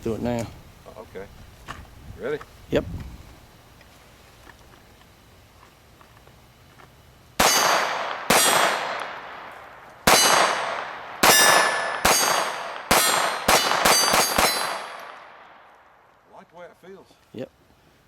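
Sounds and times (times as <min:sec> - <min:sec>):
pistol shots with ringing decay: 0:07.4 - 0:15.6.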